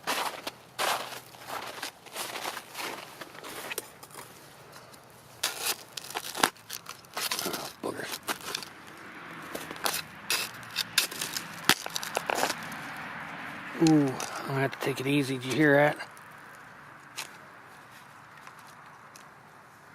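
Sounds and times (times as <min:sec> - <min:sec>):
crunching and scraping: 0:00.0 - 0:19.9.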